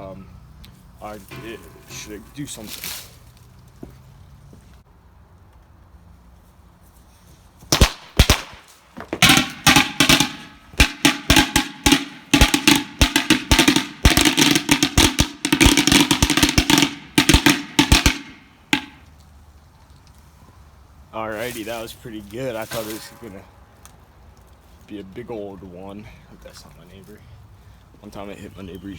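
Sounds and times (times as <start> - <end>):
firecrackers cracking: 7.7 - 19.1.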